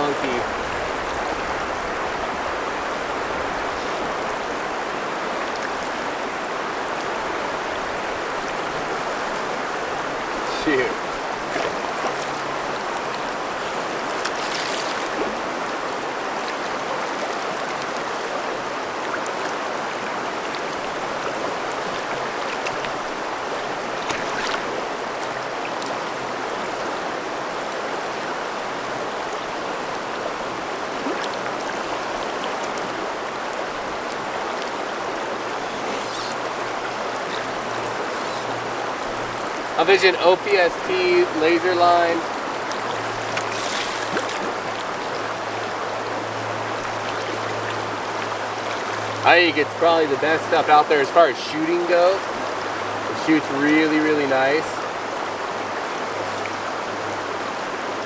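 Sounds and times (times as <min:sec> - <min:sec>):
river current rushing: 0:00.0 - 0:58.0
faint sharper sounds: 0:35.6 - 0:36.4, 0:38.0 - 0:38.5.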